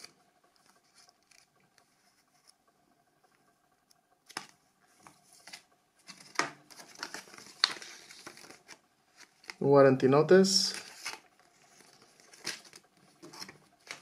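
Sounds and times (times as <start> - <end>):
paper rustling: 4.3 - 9.6, 10.6 - 14.0.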